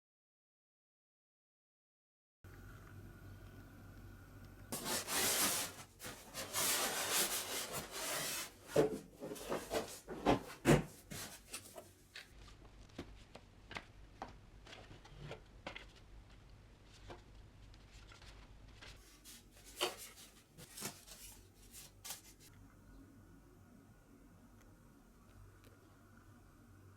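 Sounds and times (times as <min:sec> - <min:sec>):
packaging rustling: 0:04.8 - 0:11.9, 0:18.0 - 0:22.4.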